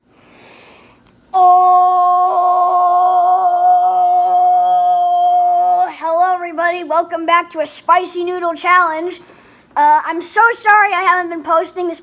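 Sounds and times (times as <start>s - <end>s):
person holding a long note: 1.4s - 6.1s.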